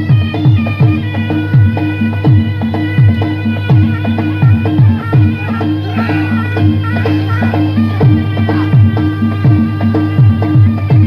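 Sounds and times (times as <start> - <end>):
held melody line: 0.0 - 11.0
low drum strokes: 4.4 - 11.0
low drone: 4.6 - 11.0.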